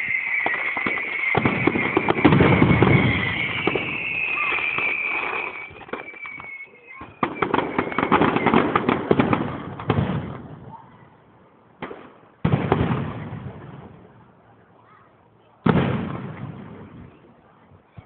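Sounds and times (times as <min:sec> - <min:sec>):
firework whistling: 0:00.0 - 0:09.8
firework bang: 0:00.0 - 0:10.6, 0:11.8 - 0:13.9, 0:15.6 - 0:17.1
fireworks crackling bursts: 0:00.0 - 0:10.7, 0:11.8 - 0:14.2, 0:15.6 - 0:17.2.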